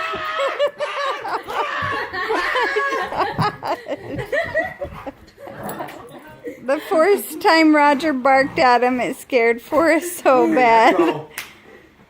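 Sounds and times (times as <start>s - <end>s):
people laughing together: 0.0s - 8.2s, 9.8s - 11.4s.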